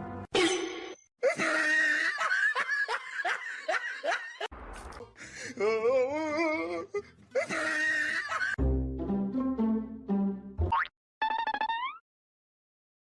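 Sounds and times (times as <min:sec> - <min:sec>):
falling ha laugh: 0:01.2 - 0:04.5.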